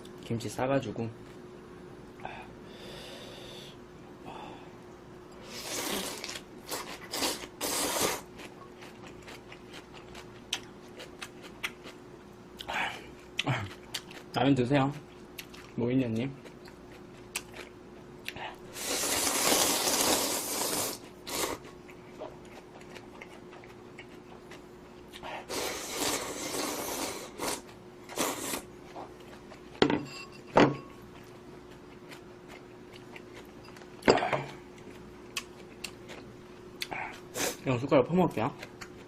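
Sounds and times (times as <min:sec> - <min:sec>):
faint steady hum: 0:00.0 - 0:39.0
person slurping noodles: 0:05.4 - 0:08.3, 0:18.7 - 0:21.6, 0:25.2 - 0:28.7.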